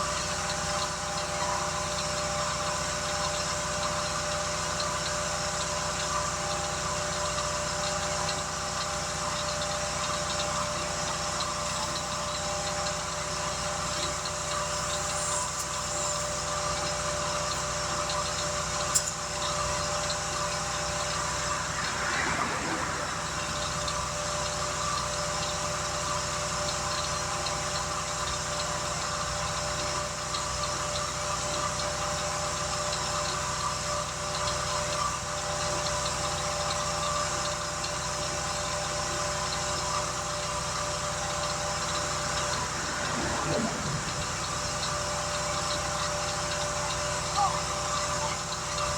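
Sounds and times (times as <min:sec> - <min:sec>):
machine drone: 0:04.8 - 0:33.1, 0:38.4 - 0:48.9.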